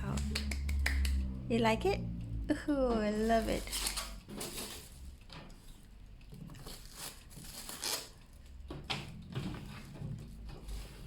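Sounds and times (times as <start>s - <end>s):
packaging tearing and rustling: 3.3s - 5.0s, 6.6s - 8.2s.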